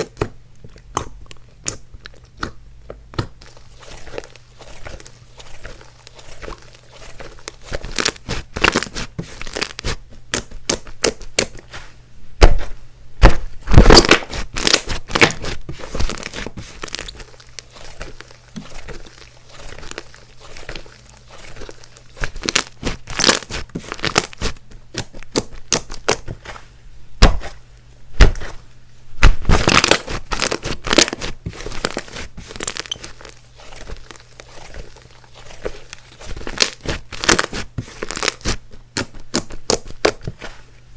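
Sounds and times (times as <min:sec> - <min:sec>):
hands squishing slime: 0:00.0 - 0:40.7
sticky crackling and tearing: 0:03.2 - 0:11.7, 0:13.7 - 0:26.4, 0:29.2 - 0:40.4.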